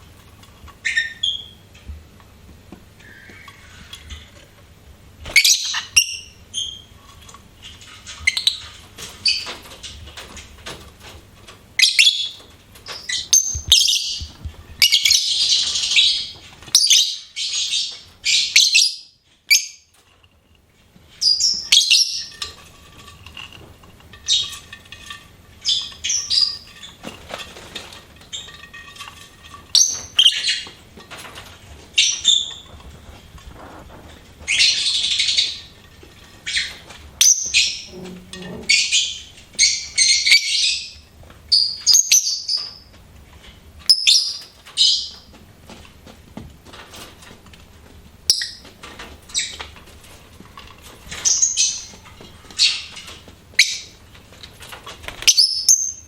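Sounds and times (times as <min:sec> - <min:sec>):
lovebirds chirping: 0:00.8 - 0:01.6, 0:03.0 - 0:04.4, 0:05.3 - 0:07.0, 0:11.8 - 0:19.9, 0:21.2 - 0:22.6, 0:24.2 - 0:24.7, 0:25.6 - 0:27.1, 0:29.6 - 0:30.9, 0:31.9 - 0:32.9, 0:34.4 - 0:42.9, 0:43.9 - 0:45.3, 0:48.2 - 0:48.7, 0:51.1 - 0:54.0, 0:55.2 - 0:56.0.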